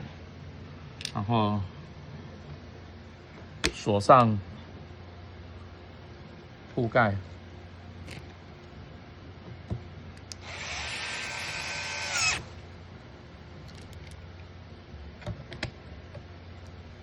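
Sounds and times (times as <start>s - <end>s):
electric screwdriver whining: 10.3s - 12.5s.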